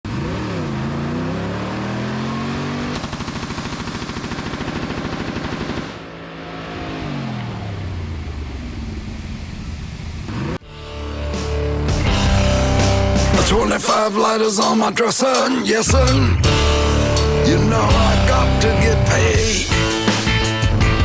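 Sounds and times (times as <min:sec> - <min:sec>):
car engine revving: 0:00.0 - 0:21.0
machine gun automatic fire: 0:02.9 - 0:06.0.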